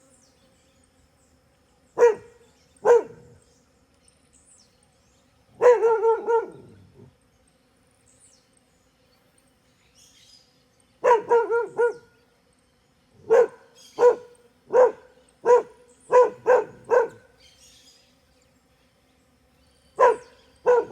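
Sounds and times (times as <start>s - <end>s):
dog barking: 2.0s - 3.4s, 5.6s - 7.1s, 11.0s - 12.1s, 13.2s - 17.3s, 20.0s - 20.9s.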